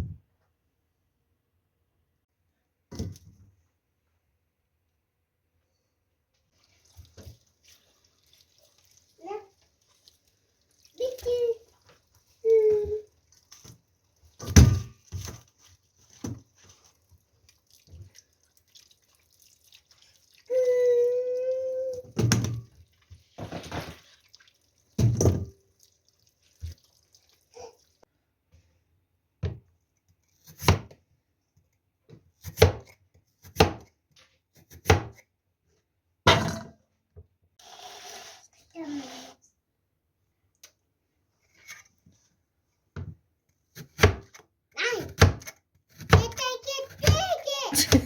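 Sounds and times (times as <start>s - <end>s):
water running and dripping: 6.4s - 28.1s.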